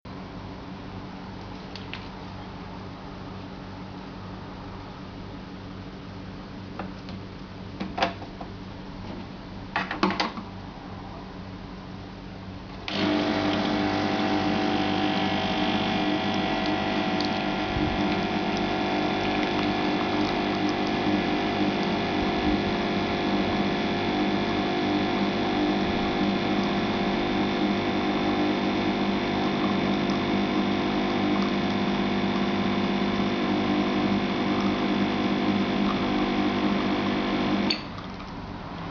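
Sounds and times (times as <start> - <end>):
espresso machine low hum: 12.8 - 38.9
espresso pump buzzing: 12.9 - 38.0.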